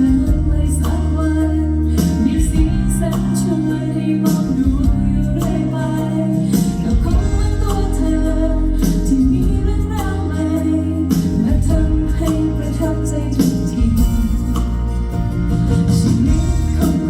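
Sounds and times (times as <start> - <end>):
song over sound system: 0.0 - 17.0.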